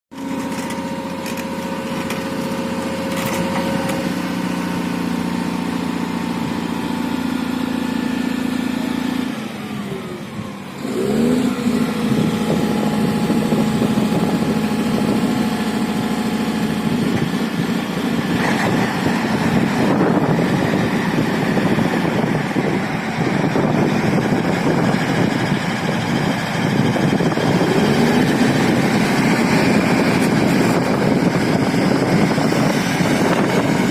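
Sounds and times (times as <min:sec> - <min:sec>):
grinding noise: 0:00.1 - 0:05.1
heavy machine engine running: 0:00.1 - 0:33.9.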